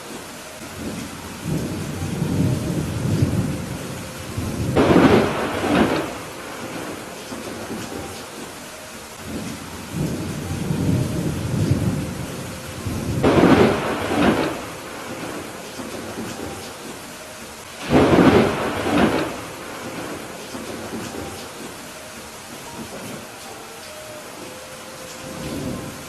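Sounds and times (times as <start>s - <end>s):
steady rain: 0.0s - 26.0s
low rumble of thunder: 0.7s - 8.5s, 9.2s - 17.0s, 17.8s - 21.8s, 25.2s - 26.0s
sharp thunderclaps: 0.8s - 8.1s, 9.2s - 17.0s, 17.8s - 21.8s.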